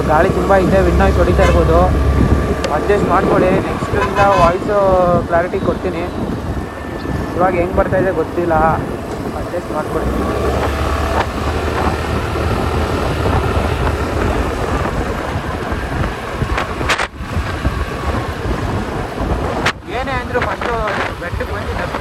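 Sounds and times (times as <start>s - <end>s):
wind buffeting microphone: 0.0s - 22.0s
scooter engine running: 8.0s - 20.0s.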